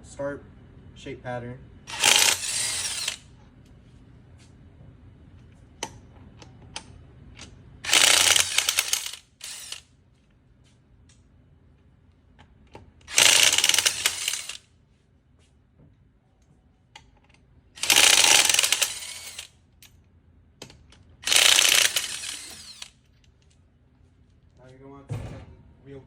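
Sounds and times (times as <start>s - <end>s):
impact wrench loosening lug nuts: 1.9s - 3.2s, 7.4s - 9.8s, 13.0s - 14.6s, 17.8s - 19.5s, 20.6s - 23.0s.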